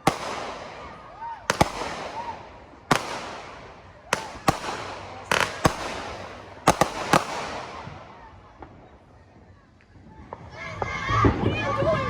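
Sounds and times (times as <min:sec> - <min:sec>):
fireworks bangs: 0:00.0 - 0:09.5
rumble of fireworks: 0:00.0 - 0:12.0.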